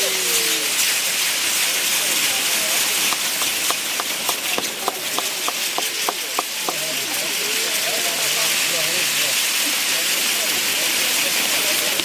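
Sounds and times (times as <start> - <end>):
fireworks hissing: 2.9 - 7.0
sharp crackling pips: 3.1 - 6.8.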